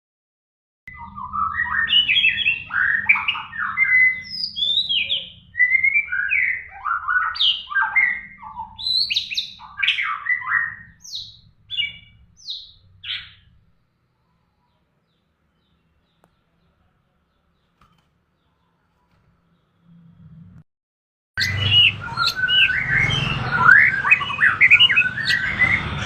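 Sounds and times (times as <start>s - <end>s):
bird singing whistled phrases: 0.9s - 13.4s, 21.4s - 25.9s.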